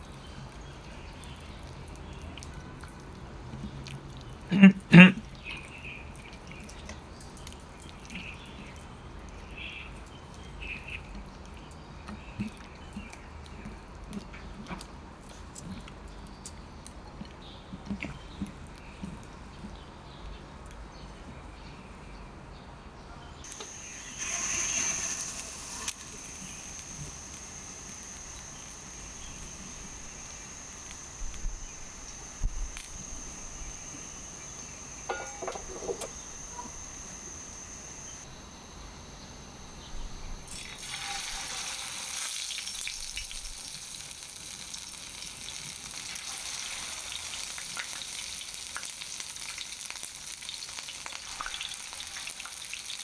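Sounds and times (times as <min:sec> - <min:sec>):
chicken sizzling in oil: 0:23.4 - 0:53.0.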